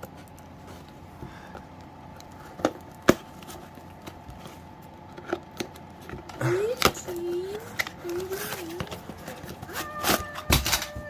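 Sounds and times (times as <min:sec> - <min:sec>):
box packaging clicks and knocks: 0:07.8 - 0:11.0.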